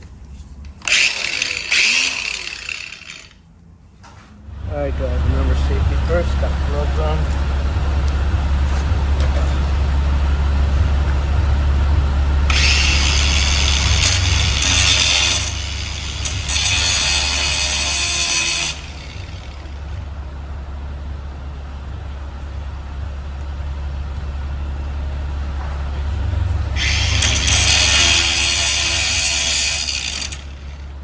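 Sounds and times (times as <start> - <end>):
steady low hum: 0.0 - 31.0
angle grinder cutting metal: 0.8 - 3.4, 12.5 - 20.0, 26.7 - 31.0.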